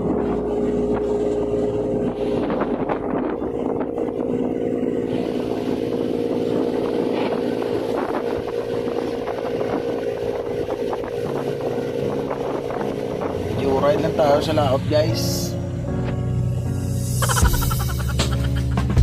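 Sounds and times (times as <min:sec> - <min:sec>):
wind and sea noise: 0:00.0 - 0:16.6
boat engine humming: 0:00.0 - 0:19.0.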